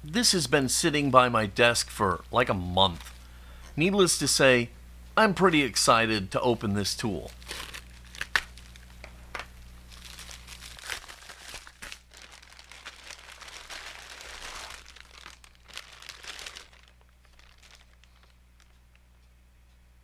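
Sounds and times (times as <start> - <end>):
packaging crinkling and tearing: 7.2 - 18.8.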